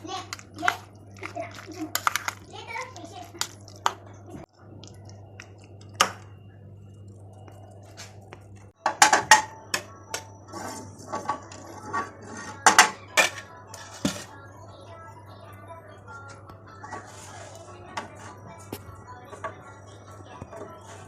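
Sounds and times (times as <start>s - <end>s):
steady low hum: 0.0s - 21.0s
utensils and dishes clinking: 8.8s - 14.3s.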